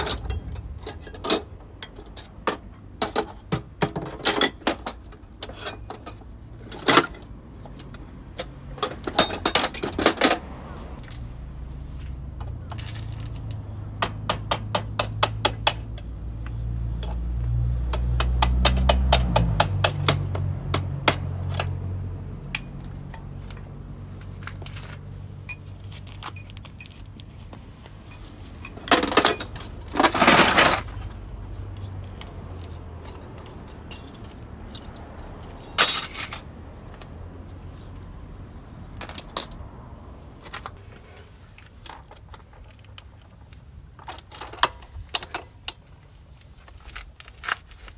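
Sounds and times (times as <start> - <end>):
metal tools clinking: 0.0 - 11.2, 12.6 - 15.5, 18.4 - 27.0, 28.0 - 36.5.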